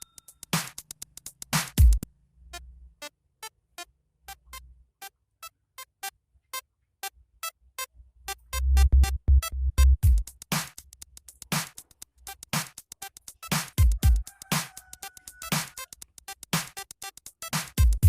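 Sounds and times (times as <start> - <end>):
drum machine beat: 0.0 - 2.1, 8.3 - 18.0.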